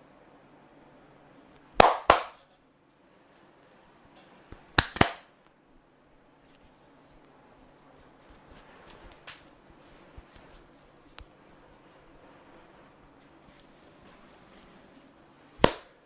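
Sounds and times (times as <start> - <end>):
sharp hand slaps: 1.8 - 2.4, 4.8 - 5.3, 15.6 - 16.0.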